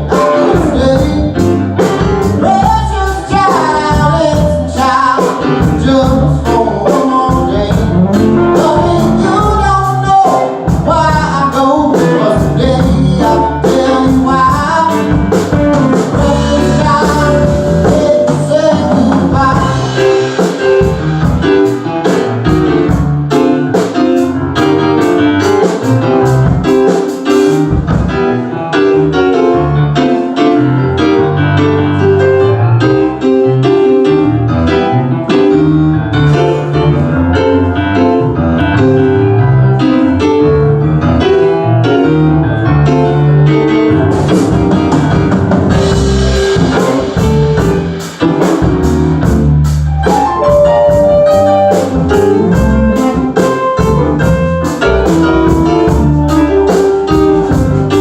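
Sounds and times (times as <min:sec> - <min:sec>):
drum kit steady beat: 0:00.0 - 0:28.5, 0:44.0 - 0:58.0
keyboard lead: 0:00.0 - 0:58.0.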